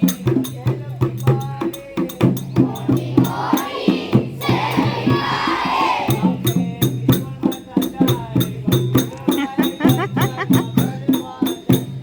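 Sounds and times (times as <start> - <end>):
children's song with light percussion: 0.0 - 12.0
voices singing: 0.0 - 12.0.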